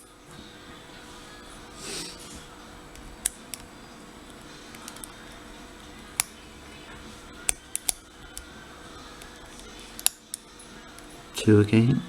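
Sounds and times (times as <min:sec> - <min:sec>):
lock pick clicking in padlock: 0:04.7 - 0:05.2, 0:06.2 - 0:06.4, 0:07.4 - 0:08.5, 0:09.2 - 0:11.1.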